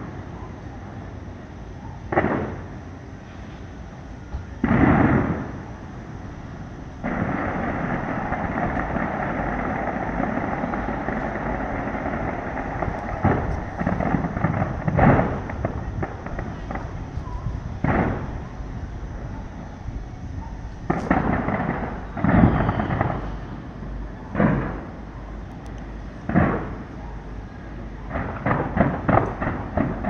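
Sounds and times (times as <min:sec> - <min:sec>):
fireworks booming: 0:02.0 - 0:30.0
fireworks crackling: 0:02.1 - 0:30.0.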